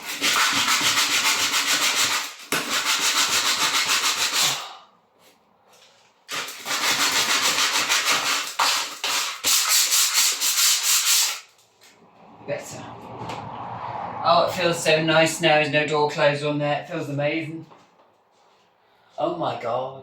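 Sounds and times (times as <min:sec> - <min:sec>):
rough sanding on wood: 0:00.0 - 0:04.7, 0:06.3 - 0:11.5.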